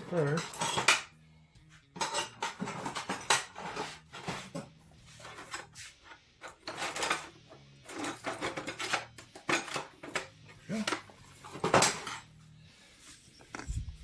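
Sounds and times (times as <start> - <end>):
hands handling plastic parts: 13.2 - 14.0.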